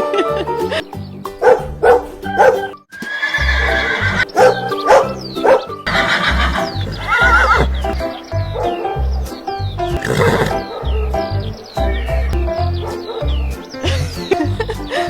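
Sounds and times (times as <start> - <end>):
horse neighing: 3.0 - 8.0, 10.0 - 10.7.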